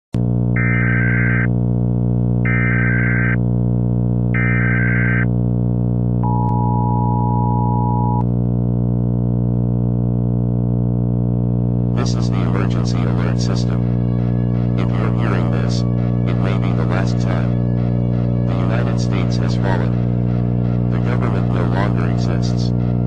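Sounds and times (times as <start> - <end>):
low buzzing drone: 0.2 - 23.0
two-tone attention signal: 6.2 - 8.2.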